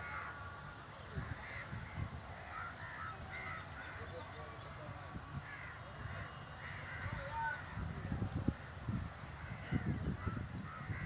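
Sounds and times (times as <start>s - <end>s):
crows cawing: 0.0s - 0.5s, 1.2s - 4.3s, 5.4s - 8.7s, 9.3s - 11.0s.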